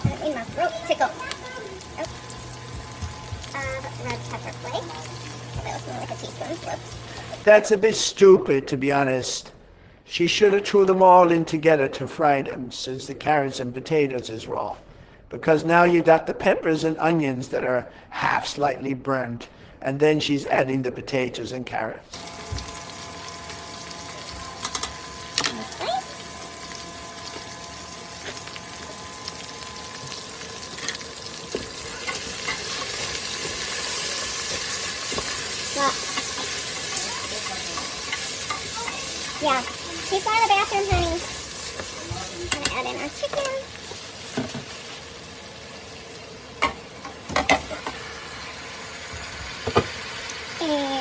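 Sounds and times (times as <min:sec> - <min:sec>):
vegetables sizzling in oil: 0:00.0 - 0:07.5, 0:22.2 - 0:51.0.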